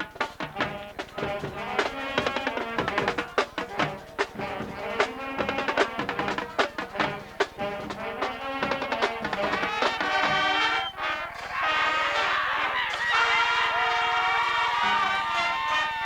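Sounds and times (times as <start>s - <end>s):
drum strokes: 0.0s - 11.6s
brass instruments holding notes: 0.0s - 16.0s.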